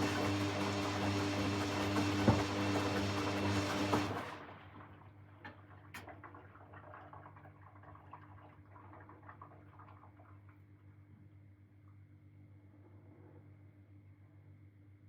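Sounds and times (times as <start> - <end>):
washing machine drum tumbling: 0.0 - 6.5
water dripping in drum: 4.8 - 10.6.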